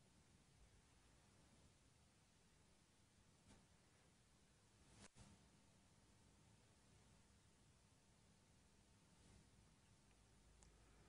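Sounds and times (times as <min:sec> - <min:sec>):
faint hiss: 0:00.0 - 0:11.0
faint click: 0:10.1 - 0:10.8.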